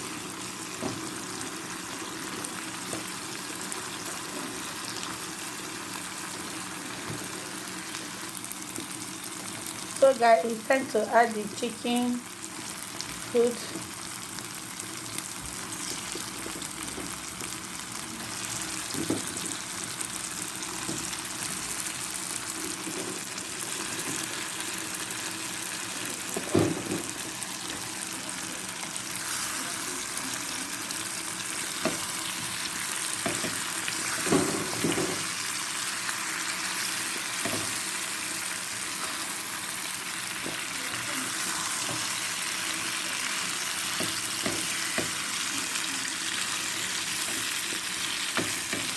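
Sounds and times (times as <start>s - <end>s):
food sizzling in pot: 0.0s - 48.9s.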